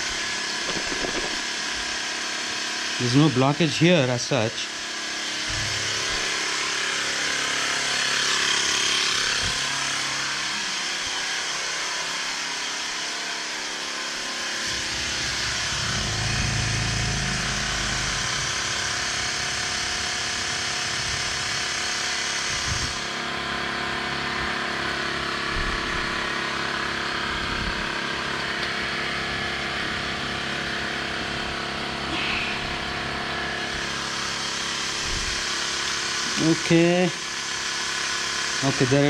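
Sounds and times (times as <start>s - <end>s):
small electric motor humming: 4.9s - 39.0s.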